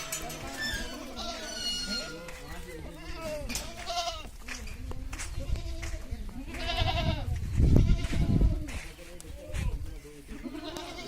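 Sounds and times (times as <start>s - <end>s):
goats bleating: 0.0s - 4.3s, 5.4s - 8.7s, 10.2s - 11.0s.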